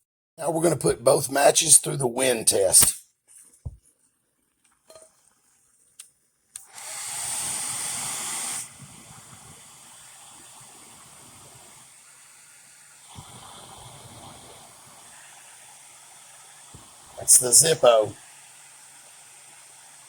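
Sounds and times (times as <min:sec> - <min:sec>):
match flaring and fizzing hiss: 0:06.7 - 0:20.0.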